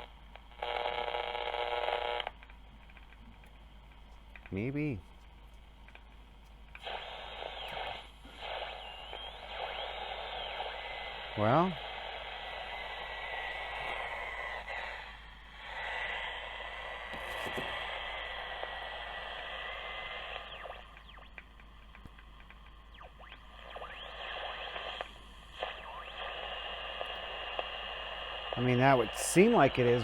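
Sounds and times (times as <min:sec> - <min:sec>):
low mains hum: 0:00.0 - 0:30.0
radio static hiss: 0:00.0 - 0:30.0
radio whistle: 0:06.8 - 0:21.4, 0:22.9 - 0:30.0.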